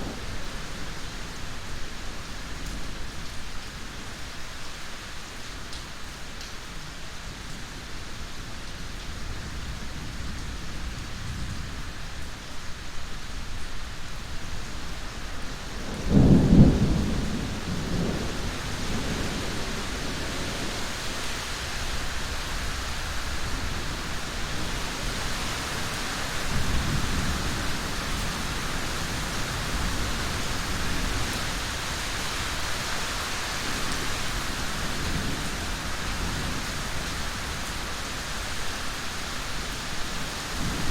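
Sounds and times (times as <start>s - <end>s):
steady rain: 0.0s - 40.9s
thunder: 15.8s - 20.9s.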